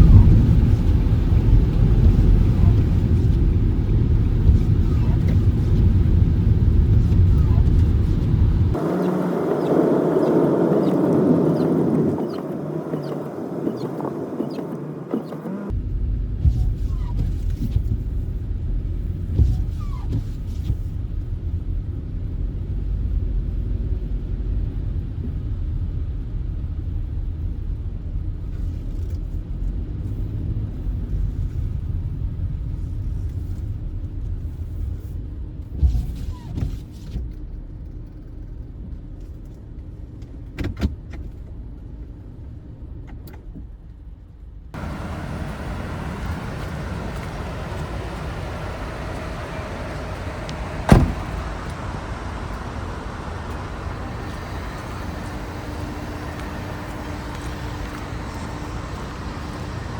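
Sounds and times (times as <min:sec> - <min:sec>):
hissy road noise: 0:00.0 - 0:15.7, 0:44.8 - 0:59.9
road and engine rumble: 0:00.0 - 0:59.9
sharp knock: 0:50.9 - 0:51.3.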